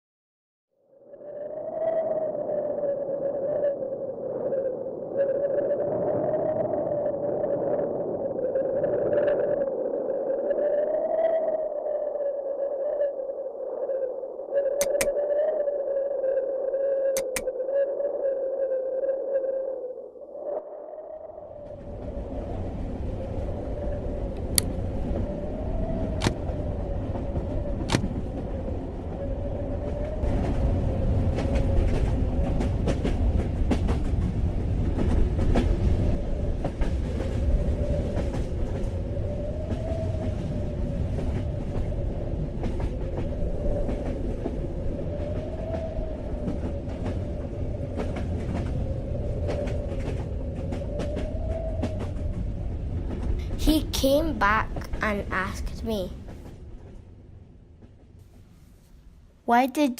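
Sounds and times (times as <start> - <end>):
train rumbling on rails: 21.7 - 54.8.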